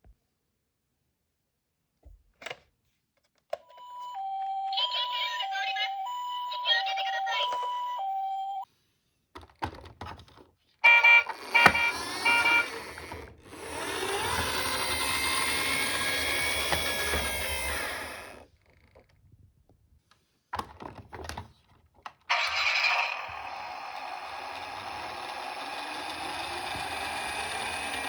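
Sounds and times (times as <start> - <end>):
toy horn beeps: 3.8 - 8.6, 10.8 - 13.1, 22.3 - 23.7.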